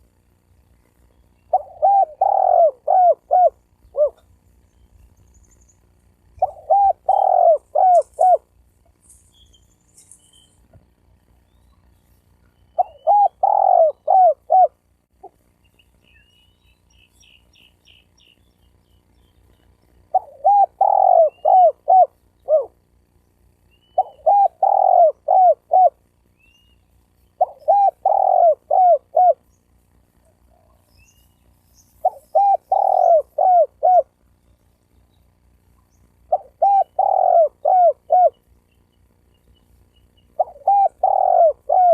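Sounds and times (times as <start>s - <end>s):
dove cooing: 1.5s - 4.5s, 6.3s - 9.2s, 12.8s - 15.4s, 20.0s - 22.8s, 23.9s - 26.1s, 27.4s - 29.5s, 32.0s - 34.2s, 36.2s - 38.5s, 40.2s - 41.9s.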